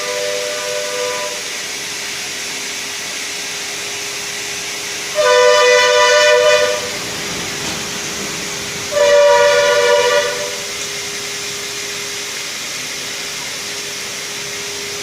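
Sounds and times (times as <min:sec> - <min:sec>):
two-note horn: 0:00.0 - 0:01.5, 0:05.2 - 0:06.9, 0:08.9 - 0:10.7.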